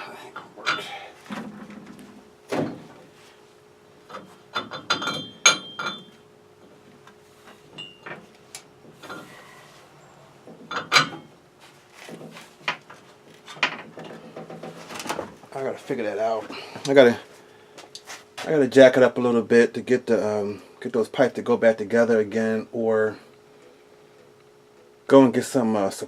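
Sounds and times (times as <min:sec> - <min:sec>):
metal pipes clanking and knocking: 0:00.3 - 0:02.0, 0:04.0 - 0:06.2, 0:07.7 - 0:08.3, 0:08.9 - 0:09.5, 0:10.4 - 0:11.3, 0:12.1 - 0:15.3.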